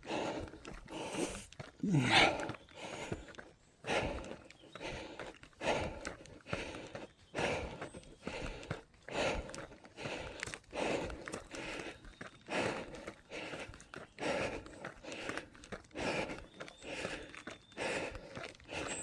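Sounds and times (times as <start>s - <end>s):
hard rhythmic breathing: 0.0s - 19.0s
footfalls on trail: 9.5s - 19.0s.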